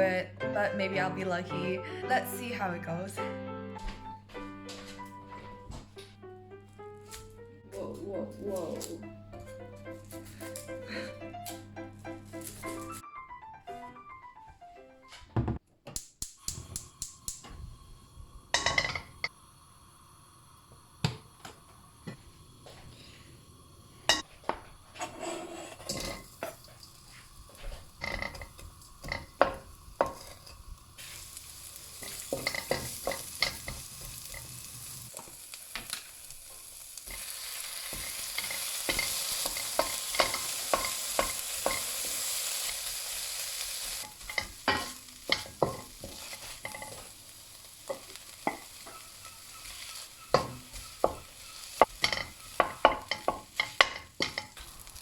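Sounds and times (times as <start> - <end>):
egg sizzling in pan: 16.2 - 55.0
utensil tapping pan: 27.7 - 30.7, 32.0 - 34.5, 37.9 - 42.2, 44.0 - 47.2, 47.8 - 54.8.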